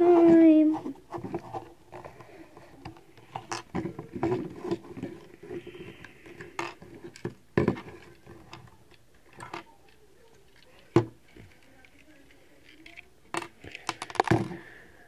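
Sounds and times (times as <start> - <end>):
plastic bricks clicking and rattling: 2.8 - 14.6.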